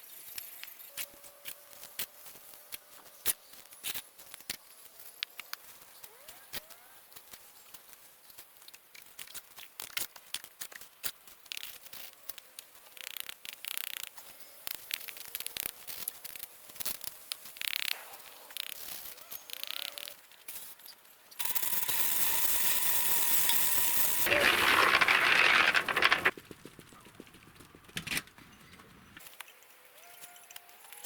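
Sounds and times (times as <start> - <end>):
raspy scrapes: 21.4 - 29.2
quick clicks and knocks: 21.4 - 29.3.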